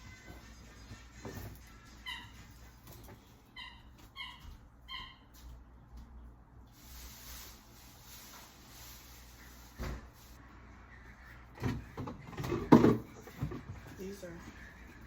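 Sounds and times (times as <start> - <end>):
squeaky dog toy squeaking: 1.9 - 2.7, 3.5 - 5.3.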